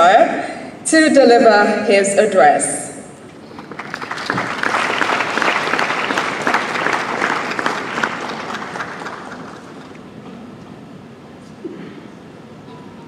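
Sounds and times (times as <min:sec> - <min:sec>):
audience applauding: 0:03.2 - 0:10.2.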